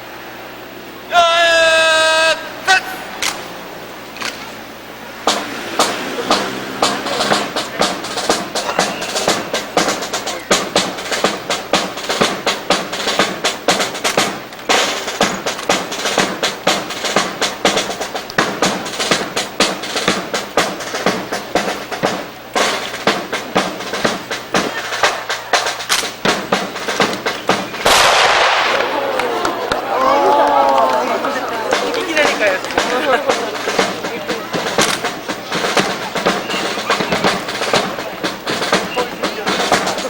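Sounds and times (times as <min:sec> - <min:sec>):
rifles clacking and slapping: 0:25.8 - 0:26.2, 0:26.9 - 0:29.8, 0:34.7 - 0:36.0.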